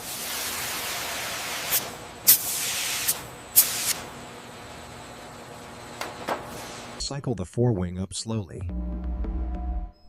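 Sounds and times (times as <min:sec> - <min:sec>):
short sharp hissing bursts: 0:00.0 - 0:04.1.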